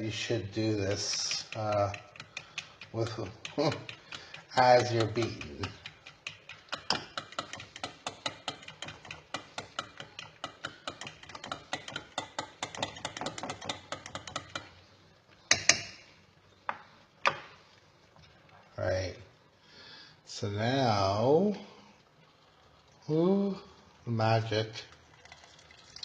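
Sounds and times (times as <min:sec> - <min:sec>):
whisk clicking against bowl: 0:00.5 - 0:14.7.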